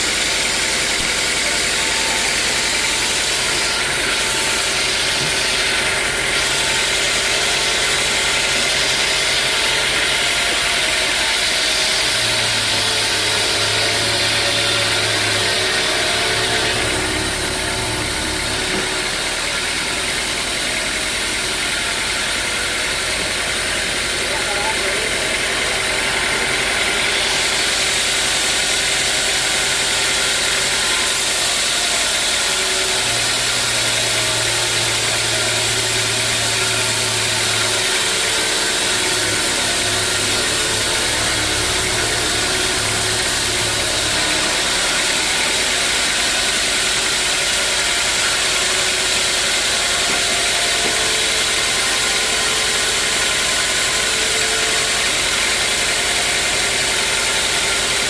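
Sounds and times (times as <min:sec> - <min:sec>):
motor humming: 0:00.0 - 0:58.0
sawmill machinery hissing: 0:00.0 - 0:58.0
deeper hum: 0:12.4 - 0:21.5, 0:35.7 - 0:47.1.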